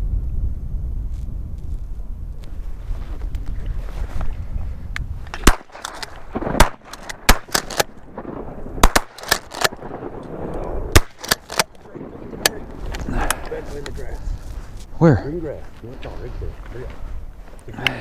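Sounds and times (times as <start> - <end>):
low wind noise: 0.0 - 18.0
shotgun shots: 5.3 - 13.4.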